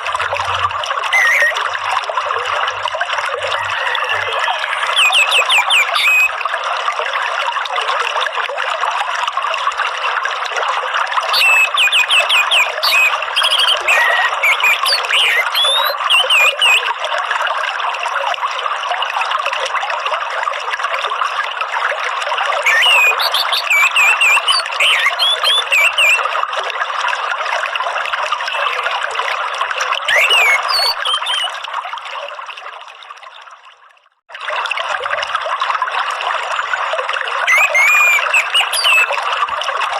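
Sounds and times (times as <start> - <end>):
trickling running water: 0.0 - 39.9
high bird chirping: 1.1 - 1.6, 4.4 - 6.3, 11.3 - 16.9, 22.6 - 26.2, 30.1 - 31.5, 37.5 - 39.1.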